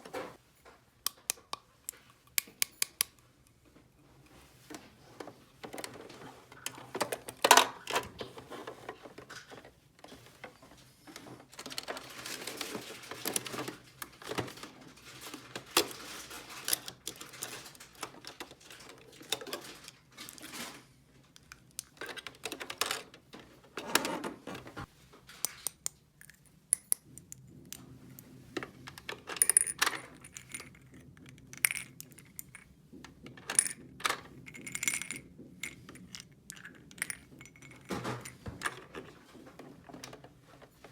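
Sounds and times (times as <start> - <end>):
plastic toy pieces clattering: 11.6 - 20.8, 28.9 - 32.6, 33.4 - 39.2.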